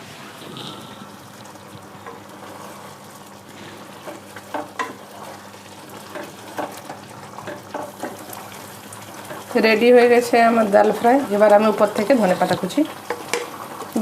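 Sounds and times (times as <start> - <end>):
food sizzling in a pan: 0.0 - 14.0.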